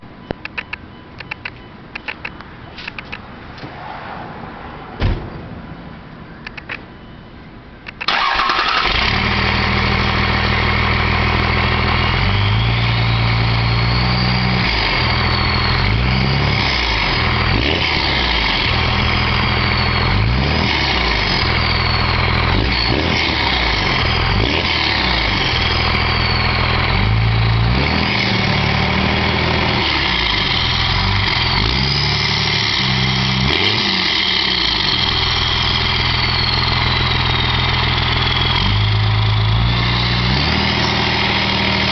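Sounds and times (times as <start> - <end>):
diesel engine revving: 8.1 - 41.9
turbo whistle: 11.5 - 17.6, 18.7 - 28.5.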